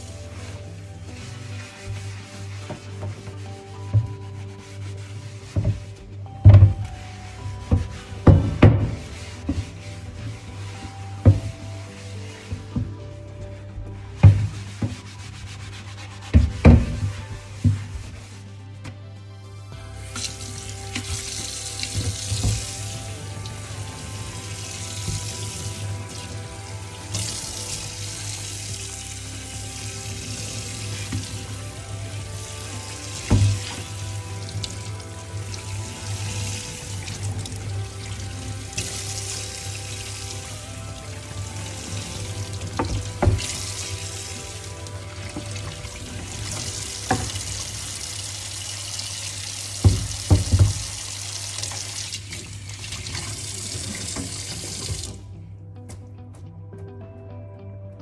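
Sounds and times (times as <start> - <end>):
knife and cutting board washed: 0.0 - 18.6, 20.0 - 55.2
tap running into a sink: 5.5 - 15.2, 16.3 - 18.2, 20.2 - 55.2
knocks in a sink: 7.7 - 9.6, 14.2 - 14.9, 16.4 - 18.0, 33.2 - 34.0, 42.8 - 43.8, 49.8 - 51.1.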